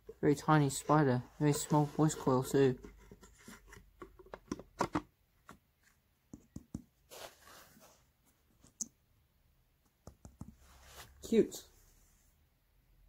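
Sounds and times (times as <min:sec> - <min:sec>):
hands clicking and tapping parts: 0:03.9 - 0:07.0, 0:09.8 - 0:10.6.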